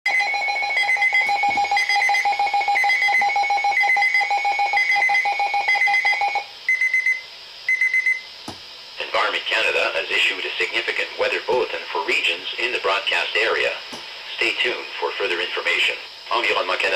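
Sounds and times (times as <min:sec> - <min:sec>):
rapidly pulsing beep: 0:00.1 - 0:08.3.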